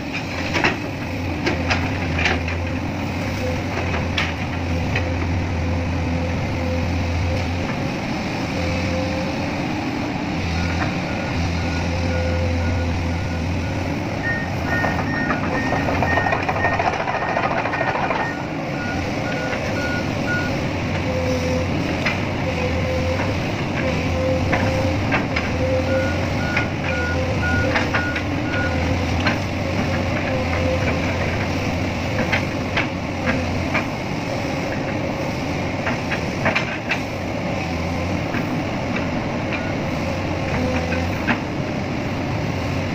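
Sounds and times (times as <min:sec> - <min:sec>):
heavy machinery diesel engine: 0:00.0 - 0:42.9
electronic warning alarm beeping: 0:11.2 - 0:16.9
second alarm beeping: 0:11.6 - 0:16.8.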